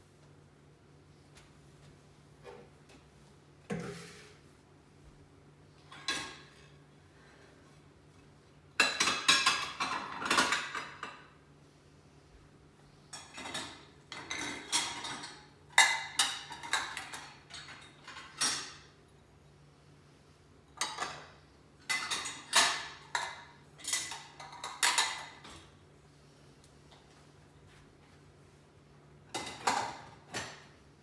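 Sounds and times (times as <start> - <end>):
dishes and cutlery clattering: 5.9 - 6.8, 8.8 - 11.4, 13.1 - 19.0, 20.8 - 25.7, 29.3 - 30.8.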